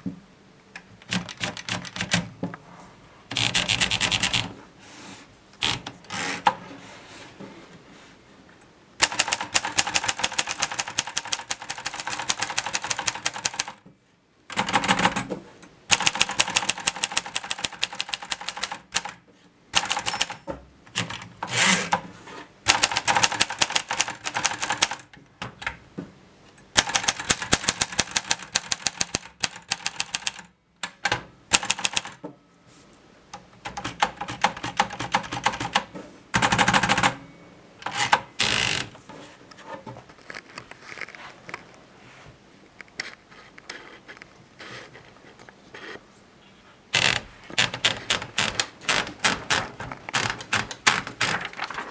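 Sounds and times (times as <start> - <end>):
typewriter key strikes: 9.0 - 13.8, 15.9 - 19.2, 19.8 - 21.2, 22.7 - 25.0, 26.8 - 32.2.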